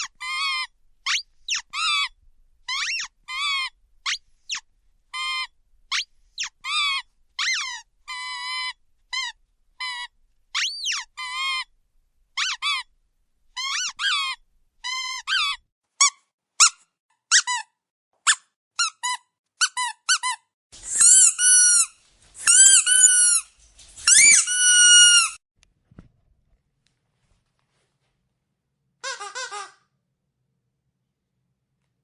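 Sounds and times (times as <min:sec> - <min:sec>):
rubber squeaky toy squeaking: 0:00.0 - 0:11.7, 0:12.4 - 0:12.9, 0:13.6 - 0:25.4, 0:29.0 - 0:29.8
air hissing through squeaker: 0:20.8 - 0:25.4.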